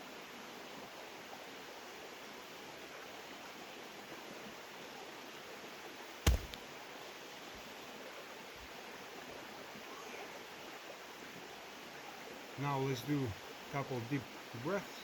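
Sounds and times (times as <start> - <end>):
creek water flowing: 5.0 - 14.5
sharp knock: 6.3 - 6.6.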